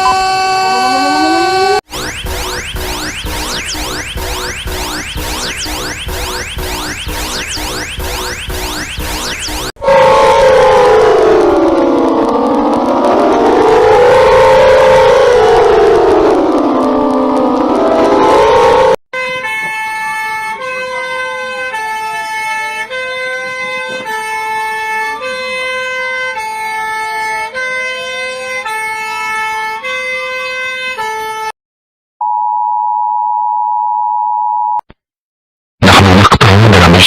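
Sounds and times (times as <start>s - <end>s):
slow rising and falling tone: 0.0s - 19.0s
steady alarm tone: 0.0s - 19.0s
two-tone alarm siren: 0.0s - 31.5s.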